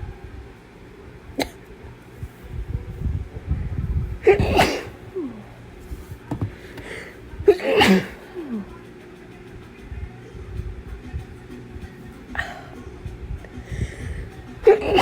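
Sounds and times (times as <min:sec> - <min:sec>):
low rumble of breath: 0:01.2 - 0:07.5, 0:10.0 - 0:14.7
person sneezing: 0:04.2 - 0:05.5, 0:06.8 - 0:08.7, 0:12.4 - 0:12.8, 0:14.6 - 0:15.0.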